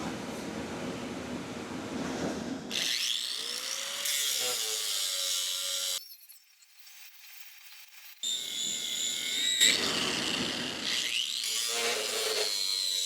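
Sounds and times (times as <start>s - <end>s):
angle grinder grinding steel: 2.7s - 13.0s.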